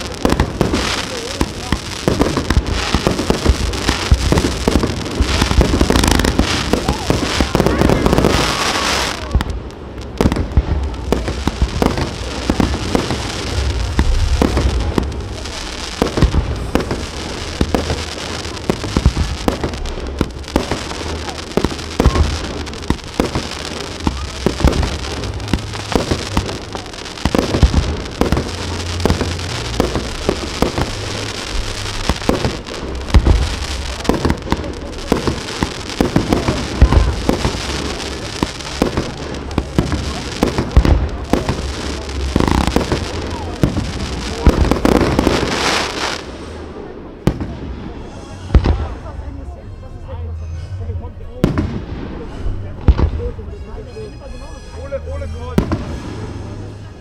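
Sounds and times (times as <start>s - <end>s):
fireworks bangs and crackles: 0.0s - 57.0s
deep rumble: 9.2s - 45.4s.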